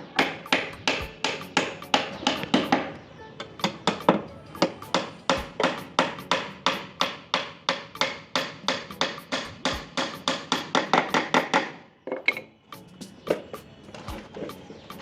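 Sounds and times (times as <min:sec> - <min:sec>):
hammer blows: 0:00.2 - 0:11.8.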